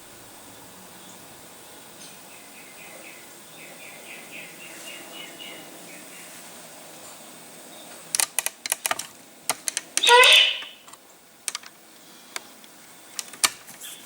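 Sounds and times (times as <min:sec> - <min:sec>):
bird chirping: 0:02.3 - 0:06.3, 0:10.0 - 0:10.9
computer keyboard clicks: 0:08.1 - 0:10.1, 0:11.5 - 0:11.7, 0:13.2 - 0:13.6.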